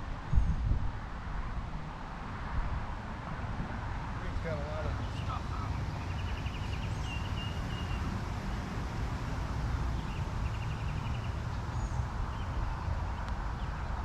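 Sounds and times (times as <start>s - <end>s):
small birds trilling: 4.2s - 14.0s
whistled bird calls: 5.0s - 8.1s.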